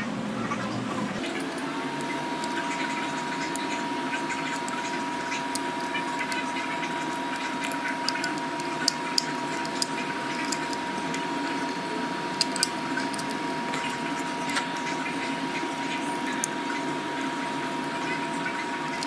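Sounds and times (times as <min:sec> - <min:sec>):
electrical hum: 0:00.0 - 0:19.0.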